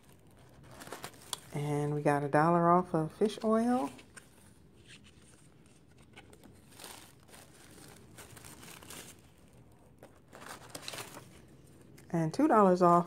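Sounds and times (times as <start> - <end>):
paper rustling and crinkling: 0.0 - 1.6, 3.3 - 12.1.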